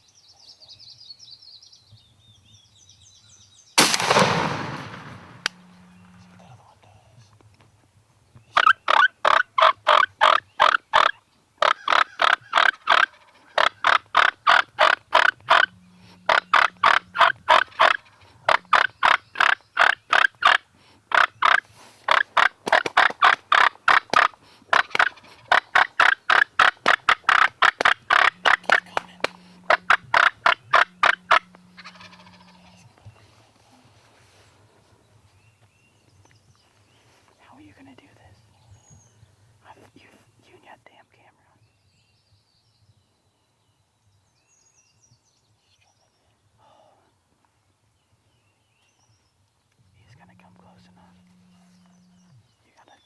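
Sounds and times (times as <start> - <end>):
turkey gobbling: 8.6 - 32.8.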